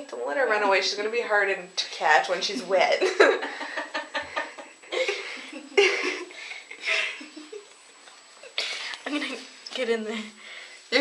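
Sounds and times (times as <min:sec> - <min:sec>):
people laughing softly: 0:03.0 - 0:08.6.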